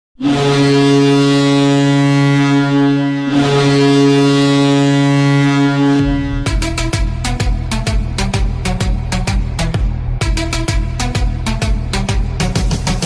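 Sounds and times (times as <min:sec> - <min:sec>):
goal horn blasts: 0:00.2 - 0:12.2
goal song with bass and drums: 0:03.4 - 0:13.0.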